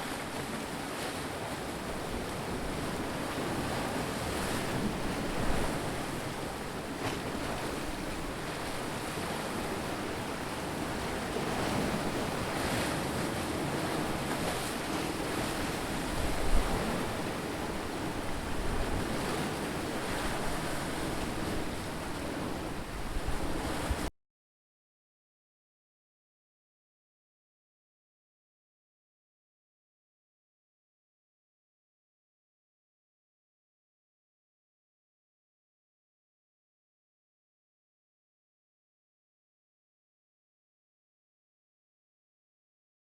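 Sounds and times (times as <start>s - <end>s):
ocean surf washing in: 0.0s - 24.1s.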